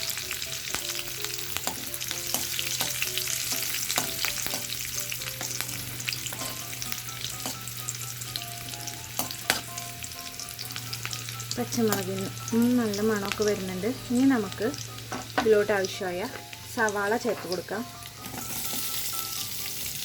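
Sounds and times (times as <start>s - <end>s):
food sizzling in hot oil: 0.0s - 20.0s.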